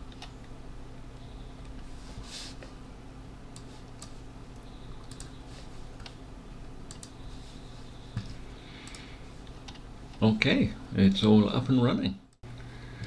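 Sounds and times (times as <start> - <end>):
low steady hum: 0.0 - 13.0
computer keyboard clicks: 3.6 - 5.4, 6.9 - 7.2.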